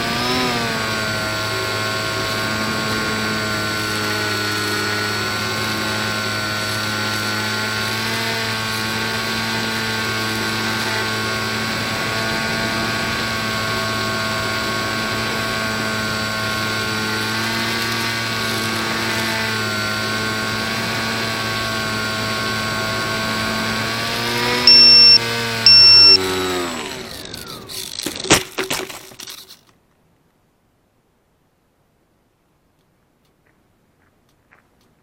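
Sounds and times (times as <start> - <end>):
electric motor and propeller: 0.0 - 29.5
loud high beeps: 24.7 - 26.2
sharp clicks: 24.7 - 26.2.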